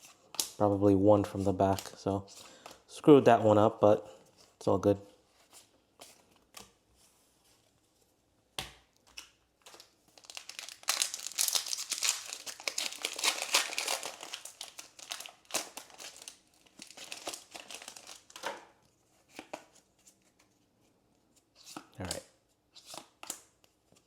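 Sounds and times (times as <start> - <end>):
foil wrapper tearing and crinkling: 10.2 - 18.4.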